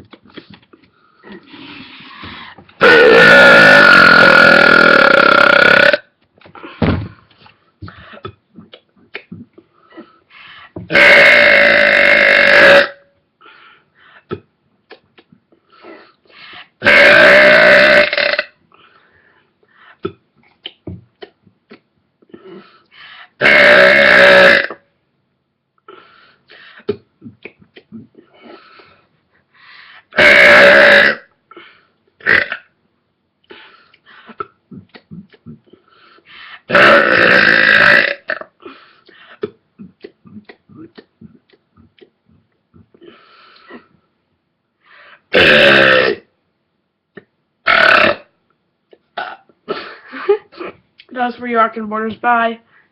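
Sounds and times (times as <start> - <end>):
person belching loudly: 2.8 - 6.1, 10.9 - 13.1, 16.8 - 18.6, 23.4 - 24.8, 30.2 - 31.3, 32.2 - 32.7, 36.7 - 38.6, 45.3 - 46.3, 47.6 - 48.4, 49.2 - 49.5.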